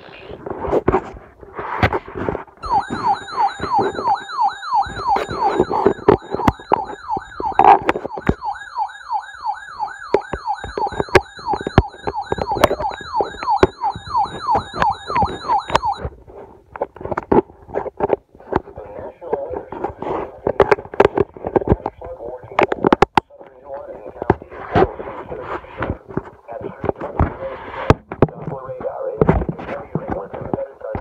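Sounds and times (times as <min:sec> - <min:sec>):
electronic yelp siren: 0:02.6 - 0:16.1.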